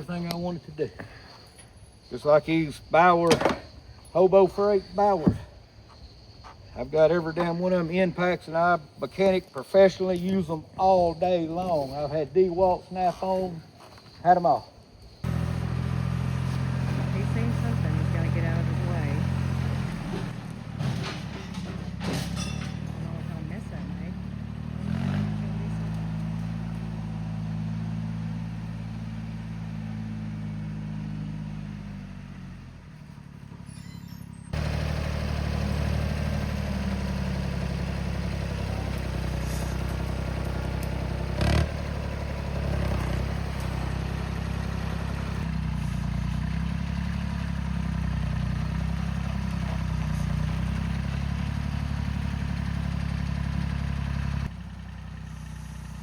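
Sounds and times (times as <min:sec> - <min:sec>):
tractor engine running: 0:00.0 - 0:56.0
sharp metal clank: 0:20.8 - 0:23.1.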